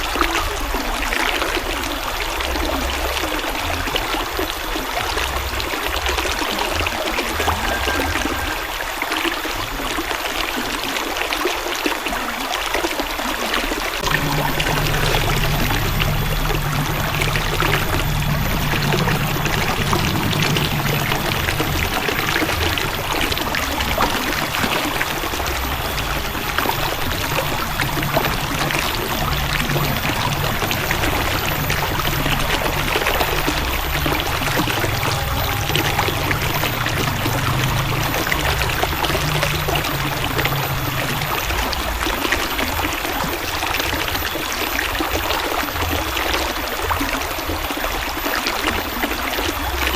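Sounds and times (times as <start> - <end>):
river water flowing over rocks: 0.0 - 49.9
low rumble: 14.0 - 43.3.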